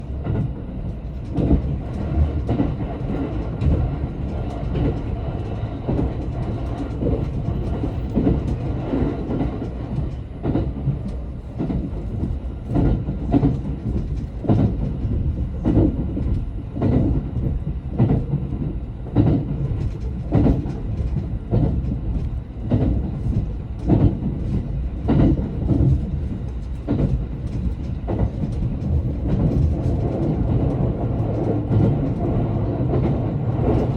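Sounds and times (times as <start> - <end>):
train low rumble: 0.0 - 33.9.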